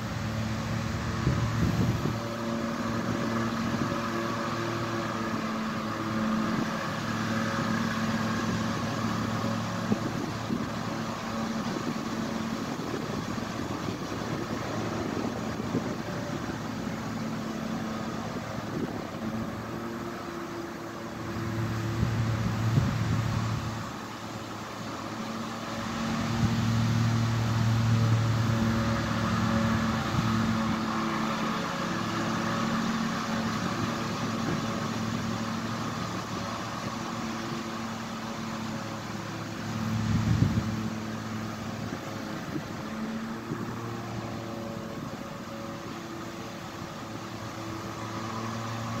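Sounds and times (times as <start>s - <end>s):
motor humming: 0.0s - 49.0s.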